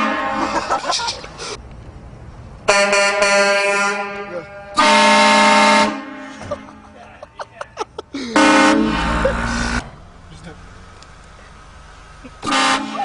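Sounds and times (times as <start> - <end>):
train air horn blasts: 0.0 - 0.6, 2.7 - 6.4, 8.4 - 9.9, 12.4 - 13.0.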